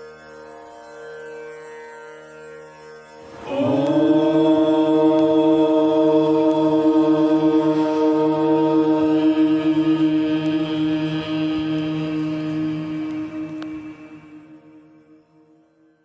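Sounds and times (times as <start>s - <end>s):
soft instrumental devotional music: 3.2s - 15.8s
voice chanting a mantra: 3.4s - 15.0s.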